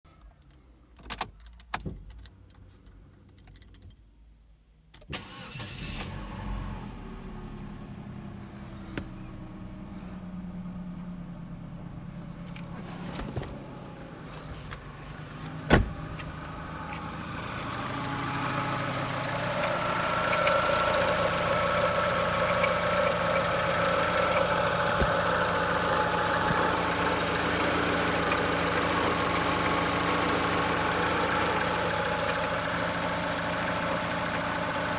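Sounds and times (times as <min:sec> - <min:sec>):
car engine starting and idling: 0:05.0 - 0:34.9
high engine whine: 0:13.4 - 0:34.8.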